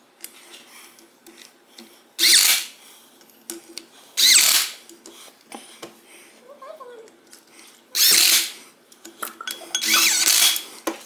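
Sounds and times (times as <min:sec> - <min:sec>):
faint clicks of parts: 0:00.2 - 0:02.0, 0:03.2 - 0:03.9
cordless drill motor whine: 0:04.2 - 0:04.7, 0:08.0 - 0:08.5.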